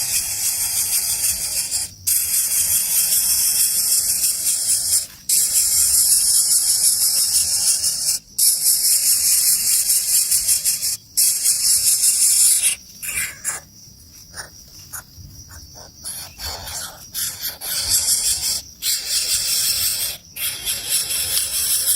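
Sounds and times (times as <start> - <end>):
nestlings hissing begging calls: 0.0 - 13.7, 15.7 - 21.9.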